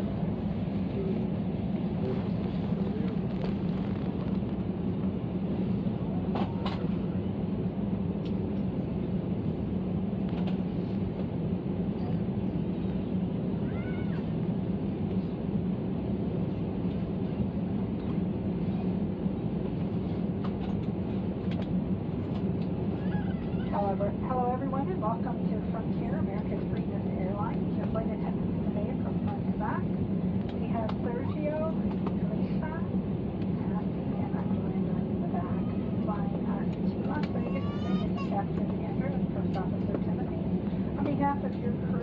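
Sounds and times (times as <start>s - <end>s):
airliner cabin hum: 0.0s - 42.0s.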